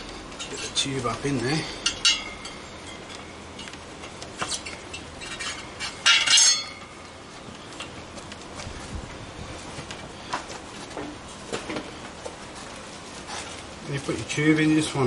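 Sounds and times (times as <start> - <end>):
ringing metal clatter: 1.8 - 3.1, 4.9 - 7.0
metal clinking: 1.8 - 3.7, 4.9 - 6.9.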